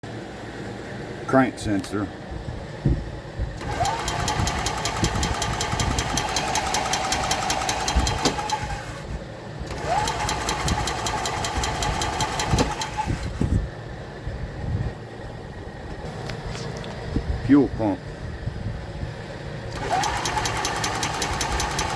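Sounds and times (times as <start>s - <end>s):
golf cart starter cranking engine: 3.6s - 13.6s, 19.7s - 21.9s.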